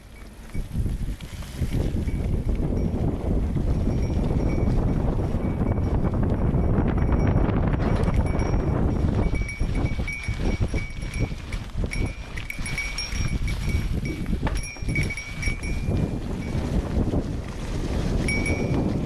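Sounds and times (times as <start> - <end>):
bike bell jingling: 0.0 - 1.0, 1.8 - 19.0
tyres and wind rumble: 0.0 - 19.0
bike rattling knocks: 5.8 - 18.9.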